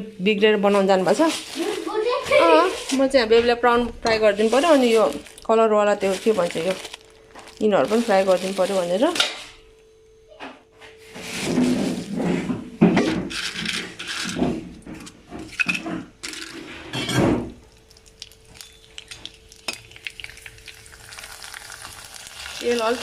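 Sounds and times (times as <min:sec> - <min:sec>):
pots and pans clattering: 0:11.3 - 0:17.6.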